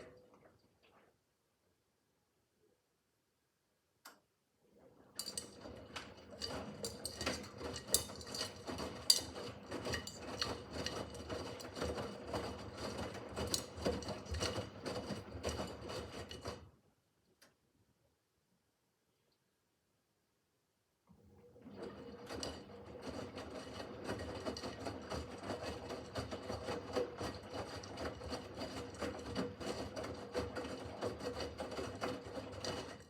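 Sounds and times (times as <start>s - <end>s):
washing machine drum tumbling laundry: 4.9s - 16.7s, 21.6s - 33.0s.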